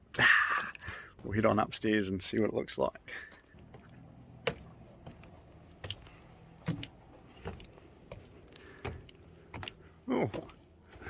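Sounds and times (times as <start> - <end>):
footsteps climbing stairs: 3.6 - 11.0.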